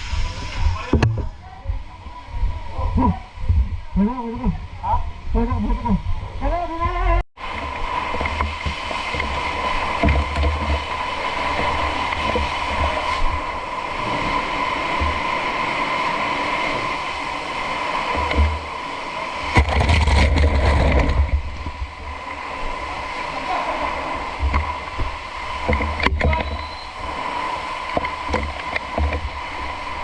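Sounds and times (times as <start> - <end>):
water spraying: 0.0 - 3.2, 7.4 - 30.0
wind buffeting microphone: 0.0 - 23.2.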